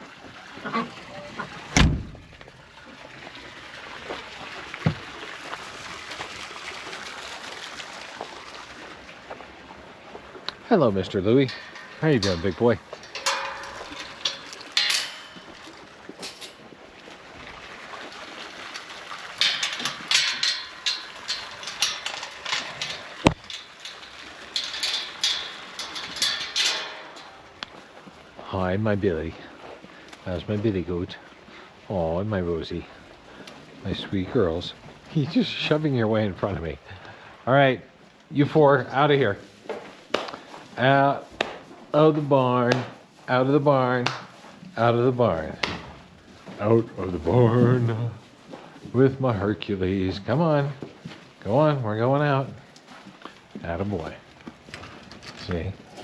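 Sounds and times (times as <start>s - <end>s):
faint steady hiss: 0.0s - 56.0s
door banging shut: 1.7s - 2.3s
crunching footsteps on rough floor: 39.3s - 43.3s.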